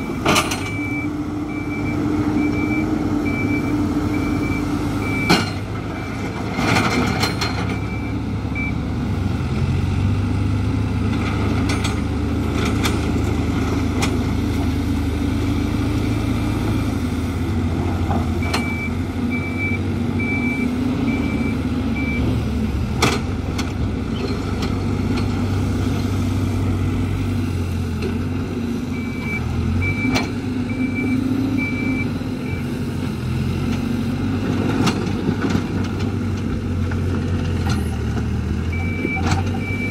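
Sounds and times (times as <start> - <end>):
reversing alarm beeping: 0.0 - 5.6, 7.7 - 8.8, 18.4 - 22.4, 28.9 - 32.8, 38.7 - 39.9
diesel engine under load: 0.0 - 39.9.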